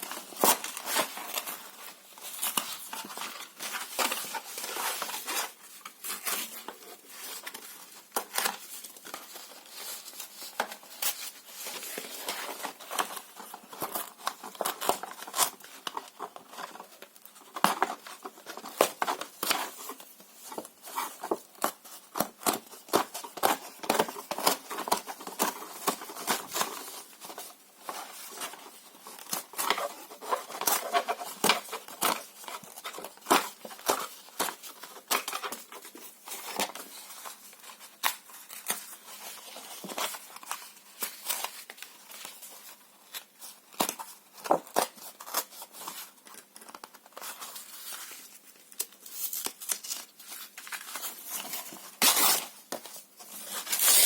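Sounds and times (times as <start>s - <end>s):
paper tearing and crumpling: 53.4s - 54.0s.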